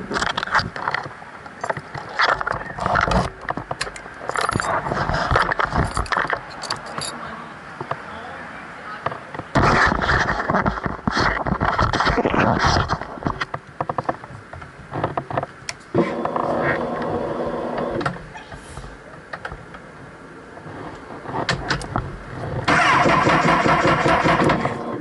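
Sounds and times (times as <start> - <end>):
motorcycle engine cranking: 22.6 - 24.9
starter motor whirring: 22.7 - 24.9.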